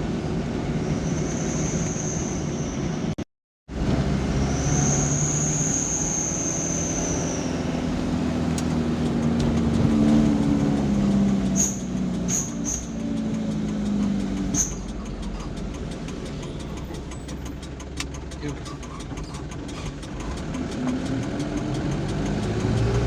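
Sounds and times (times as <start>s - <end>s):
road noise: 0.0s - 23.0s
thin high squeal: 0.9s - 3.0s, 4.4s - 7.8s, 11.6s - 13.1s
vehicle engine running: 3.7s - 23.0s
short high clicks: 11.4s - 17.8s.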